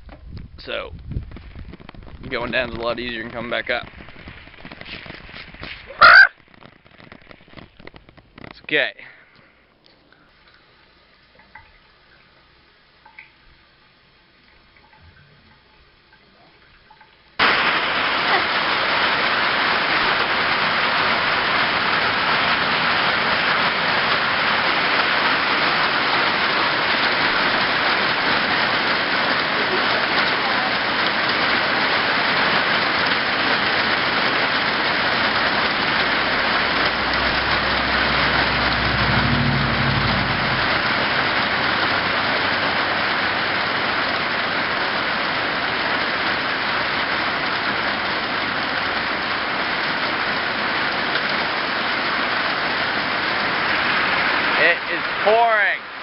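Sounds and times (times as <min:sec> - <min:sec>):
heavy rain pouring: 0:01.1 - 0:08.9, 0:17.4 - 0:56.0
low rumble: 0:35.7 - 0:43.4.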